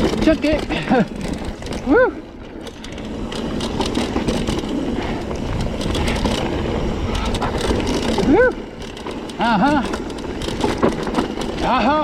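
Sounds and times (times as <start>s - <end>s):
bike clicks and rattles: 0.0s - 12.0s
bike tyre rumble on dirt: 0.0s - 12.0s
wind on microphone: 4.7s - 8.7s.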